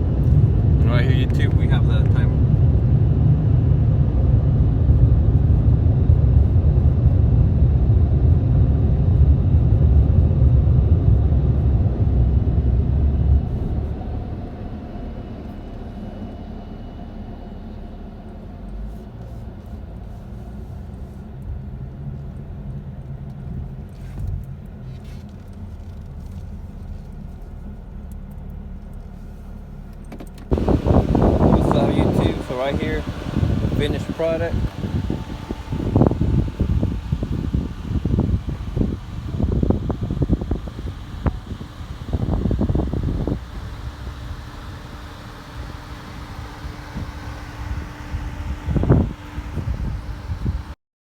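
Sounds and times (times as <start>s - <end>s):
car engine rumbling: 0.0s - 50.8s.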